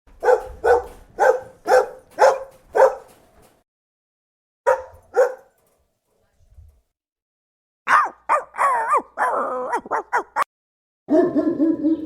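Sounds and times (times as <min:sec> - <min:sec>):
dog barking: 0:00.1 - 0:03.2, 0:04.7 - 0:05.6, 0:07.9 - 0:10.5, 0:11.1 - 0:12.0.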